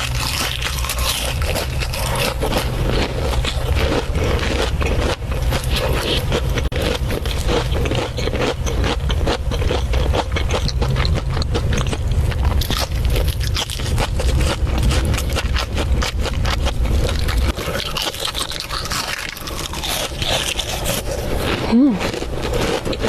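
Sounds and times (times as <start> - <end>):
crunching crispy food: 0.0 - 23.0
low rumble: 0.0 - 23.0.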